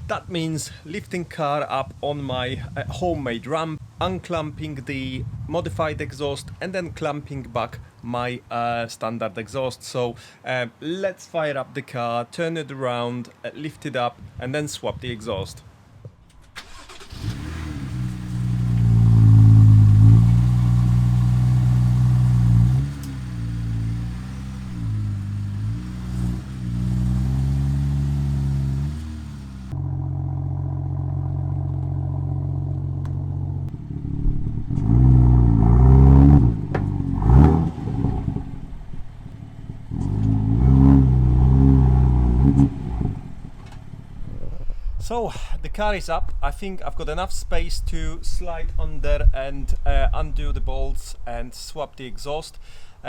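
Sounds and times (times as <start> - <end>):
car engine revving: 16.6 - 44.3.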